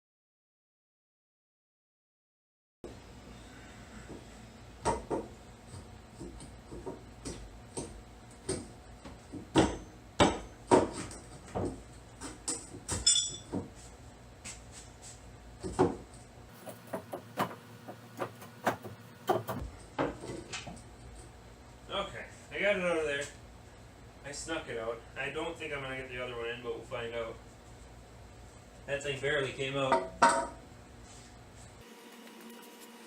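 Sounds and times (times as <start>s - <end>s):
metal parts and tools clunking: 12.5s - 13.6s
ringing metallic clink: 13.0s - 13.5s.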